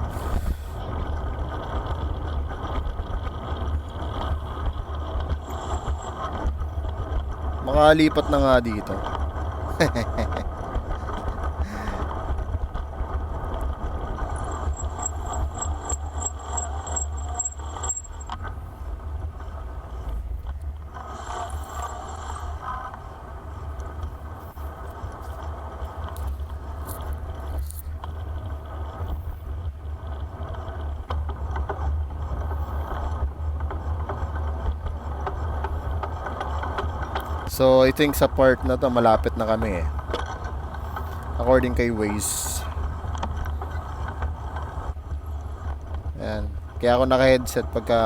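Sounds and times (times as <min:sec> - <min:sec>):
faint high-pitched pulsing whine: 0:00.0 - 0:31.1
bicycle tyre and road noise: 0:00.0 - 0:48.0
bike rattling: 0:00.0 - 0:48.0.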